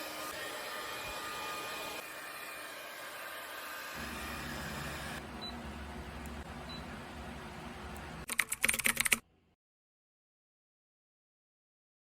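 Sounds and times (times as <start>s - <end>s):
quick sharp clicks: 8.3s - 9.2s.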